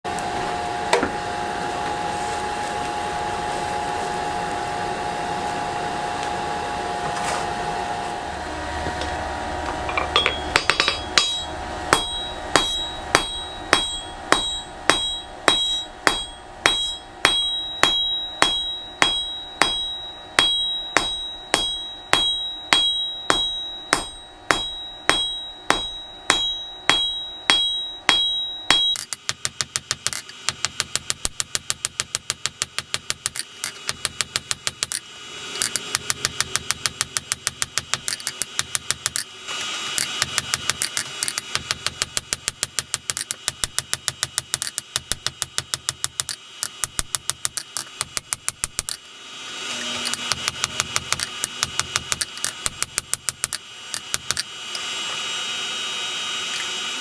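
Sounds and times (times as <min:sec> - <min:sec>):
hum: 0:07.7 - 0:57.0
hammer ringing on anvil: 0:09.9 - 0:54.8.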